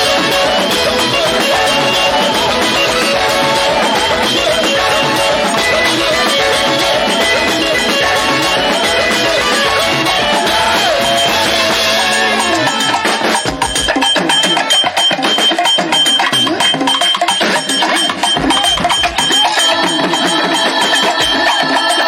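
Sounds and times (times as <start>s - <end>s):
drum and percussion strikes: 0.0s - 22.0s
gospel band music: 0.0s - 22.0s.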